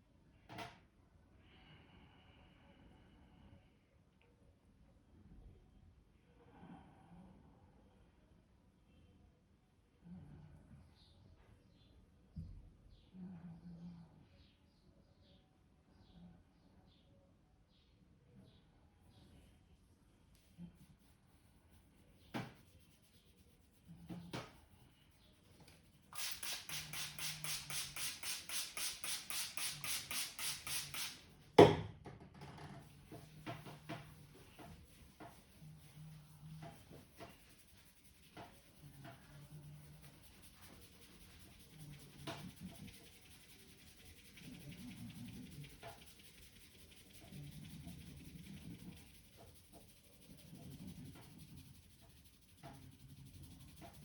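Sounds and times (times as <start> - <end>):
light taps and rubbing: 21.8 - 54.0.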